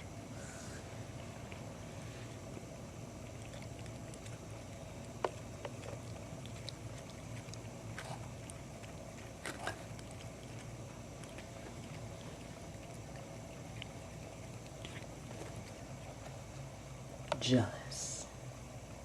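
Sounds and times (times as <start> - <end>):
low room hum: 0.0 - 19.0
cat chewing grass: 0.1 - 17.3.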